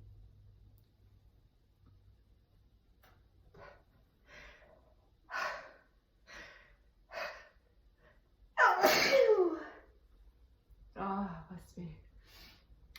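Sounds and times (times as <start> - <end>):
person sneezing loudly: 8.6 - 9.7.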